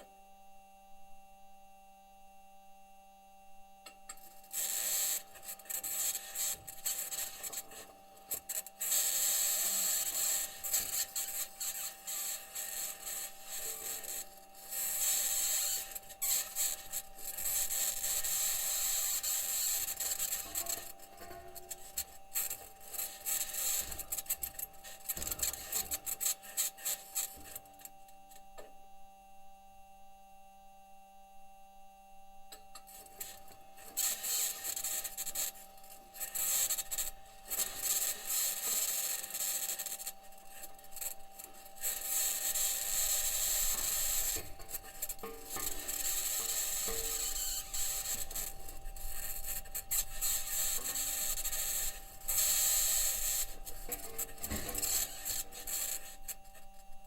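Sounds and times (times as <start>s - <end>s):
steady humming tones: 0.0s - 57.0s
wheels scraping over rock: 40.7s - 56.4s.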